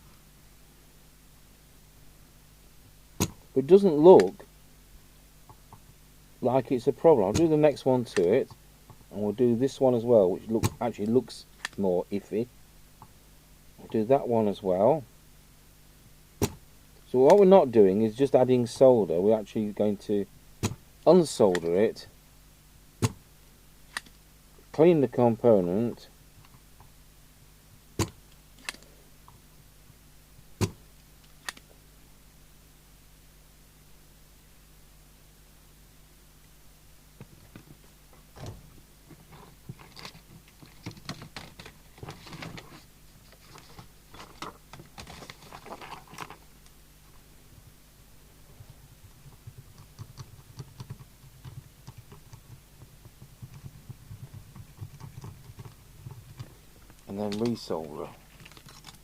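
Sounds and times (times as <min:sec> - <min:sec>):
faint mains hum: 0:00.0 - 0:59.0
hand tools clicking on circuit board: 0:49.3 - 0:56.5.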